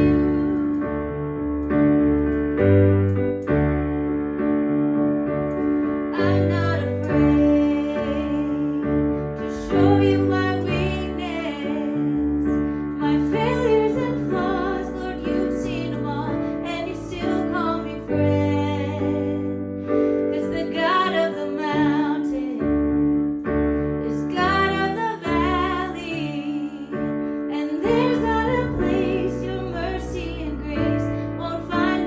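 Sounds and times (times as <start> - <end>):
woman singing: 0.0 - 0.8, 6.2 - 12.4, 13.0 - 19.7, 20.3 - 22.8, 24.0 - 32.0
piano chords: 0.0 - 32.0.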